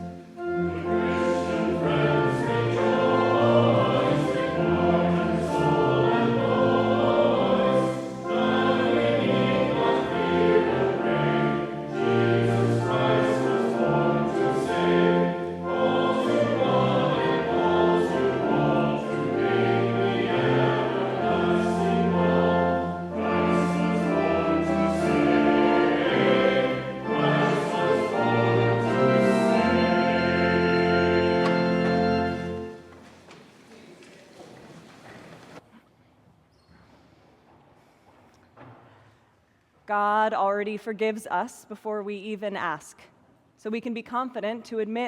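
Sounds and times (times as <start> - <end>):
choir singing a hymn: 0.0 - 32.9.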